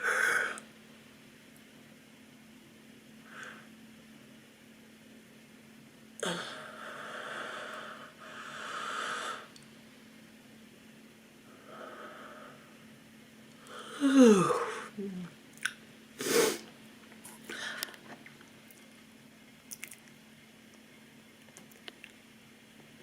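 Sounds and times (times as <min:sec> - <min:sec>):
woman yawning: 0:13.9 - 0:15.3
small mouth clicks: 0:15.6 - 0:15.8, 0:19.7 - 0:20.2.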